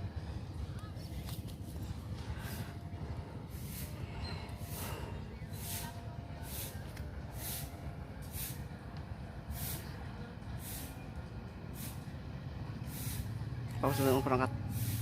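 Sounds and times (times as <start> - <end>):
diesel locomotive idling: 0.0 - 15.0
hissing puffs of air: 3.4 - 8.8, 9.4 - 10.0, 10.6 - 13.5, 14.7 - 15.0.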